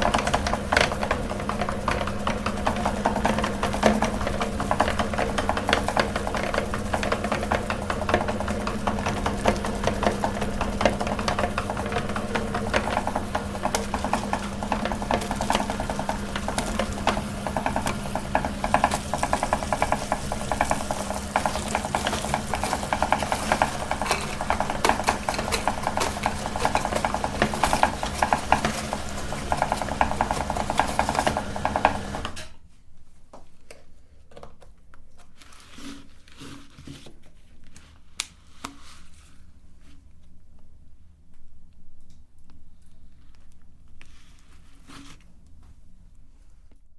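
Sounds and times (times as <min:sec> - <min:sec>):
meat grinder motor hum: 0:00.0 - 0:32.5.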